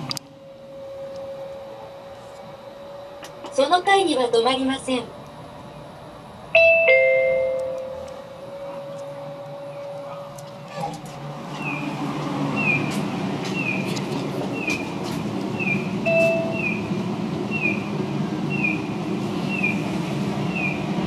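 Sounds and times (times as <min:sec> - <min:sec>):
steady low hum: 0:00.0 - 0:21.0
brief beep: 0:16.1 - 0:16.6.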